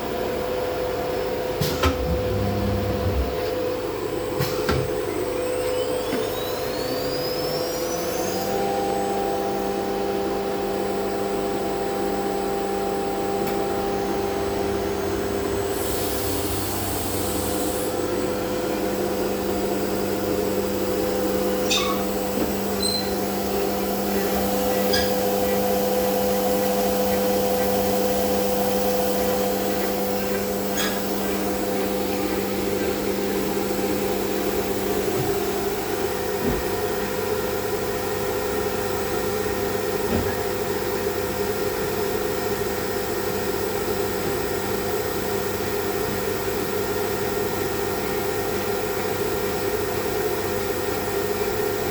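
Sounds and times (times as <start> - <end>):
axis motor tones: 1.6 - 3.6.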